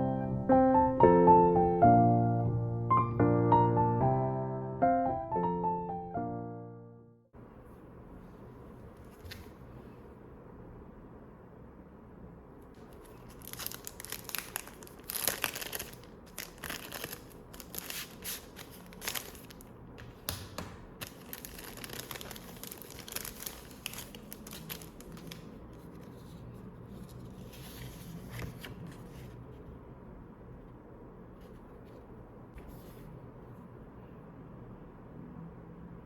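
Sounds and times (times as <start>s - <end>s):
crinkly sheet rustling: 12.8s - 19.7s, 21.0s - 29.3s.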